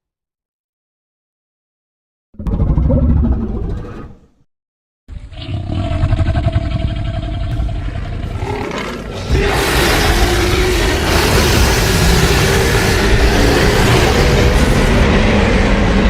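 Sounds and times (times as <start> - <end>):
low rumbling growl: 2.4 - 4.4, 5.1 - 16.0
creature roar: 5.3 - 15.3.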